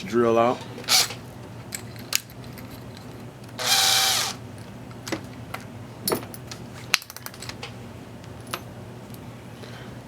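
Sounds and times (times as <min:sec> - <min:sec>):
power drill motor whine: 0:00.9 - 0:01.2, 0:03.6 - 0:04.4.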